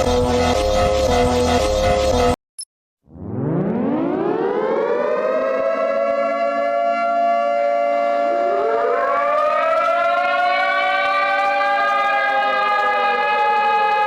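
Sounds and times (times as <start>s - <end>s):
civil defense siren wailing: 3.2s - 14.0s.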